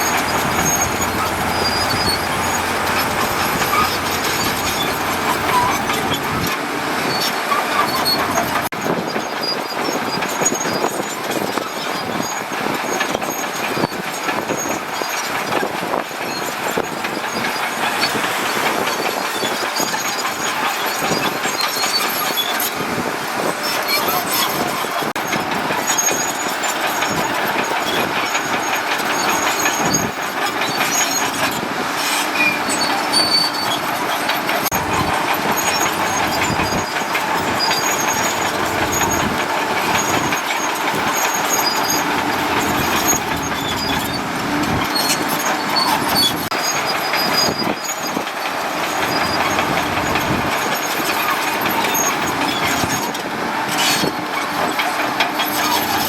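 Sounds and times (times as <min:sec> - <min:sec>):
high squeaks: 0:00.0 - 0:12.4, 0:13.4 - 0:22.8, 0:23.4 - 0:56.0
heavy machinery running: 0:00.0 - 0:56.0.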